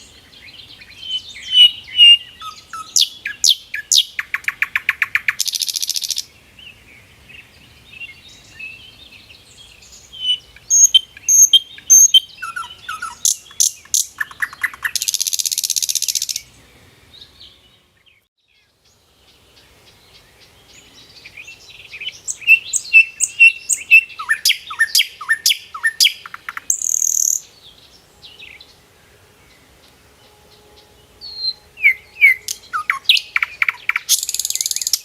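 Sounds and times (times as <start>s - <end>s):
songbirds chirping: 0.0s - 35.0s
harsh rasping bird call: 10.2s - 16.5s, 30.2s - 35.0s.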